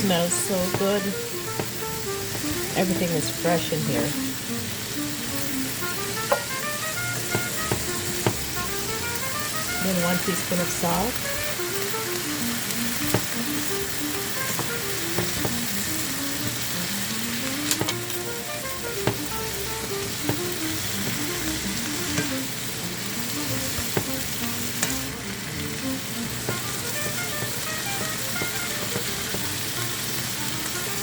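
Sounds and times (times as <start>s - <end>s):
soft background music: 0.0s - 31.0s
vegetables sizzling in a pan: 0.0s - 31.0s
utensil clicking against pan: 6.1s - 9.3s, 11.2s - 16.6s, 17.2s - 22.4s, 23.2s - 25.1s, 26.4s - 30.8s.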